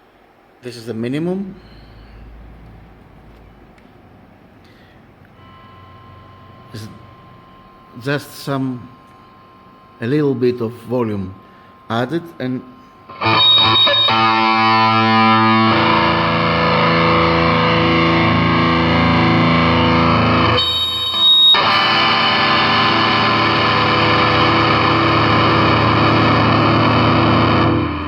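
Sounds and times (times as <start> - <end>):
overdriven electric guitar chords: 1.5 - 8.1, 12.7 - 28.0
thin high whistle: 20.5 - 23.4.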